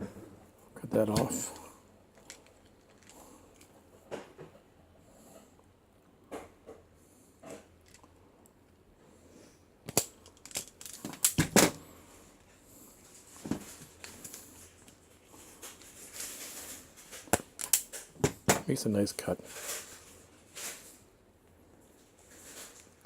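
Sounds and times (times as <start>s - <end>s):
wire stripper clicking and snapping: 17.3s - 18.0s.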